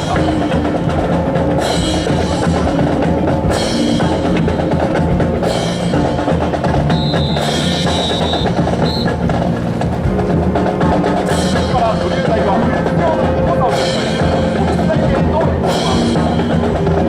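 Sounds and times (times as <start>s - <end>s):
high held tone: 0.0s - 9.4s
music with drums and percussion: 0.0s - 17.0s.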